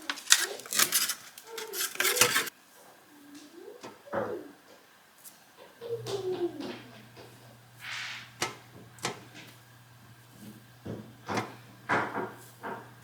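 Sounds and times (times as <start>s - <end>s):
short rustle: 0.0s - 2.5s
steady low hum: 5.8s - 13.0s
sharp knocks and clicks: 10.8s - 12.9s.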